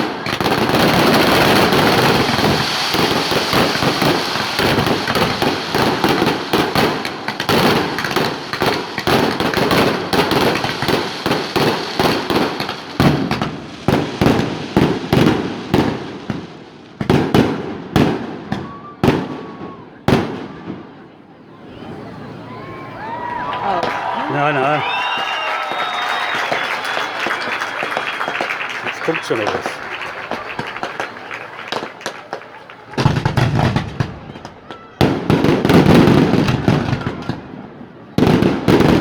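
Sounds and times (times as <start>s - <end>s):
fireworks bangs and crackling: 0.0s - 21.0s, 23.8s - 39.0s
rocket whistle rising: 25.0s - 29.0s.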